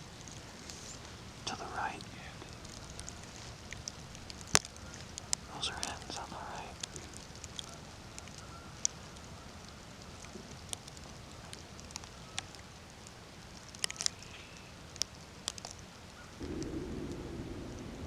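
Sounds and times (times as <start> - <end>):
sharp ticks and crackles: 0.0 - 18.0
low rushing noise: 16.4 - 18.0
low wind rumble: 16.4 - 18.0.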